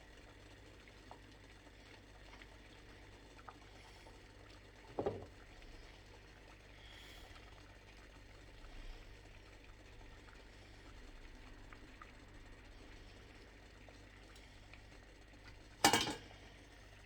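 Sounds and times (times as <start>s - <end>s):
dull knock: 4.9s - 5.3s.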